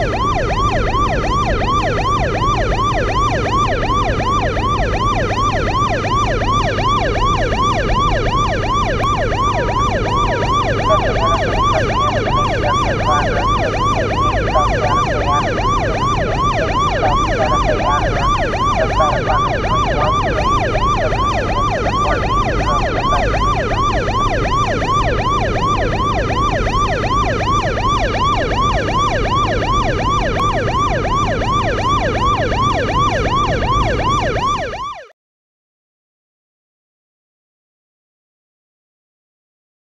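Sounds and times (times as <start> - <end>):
engine and road rumble: 0.0 - 34.6
police siren yelping: 0.0 - 35.1.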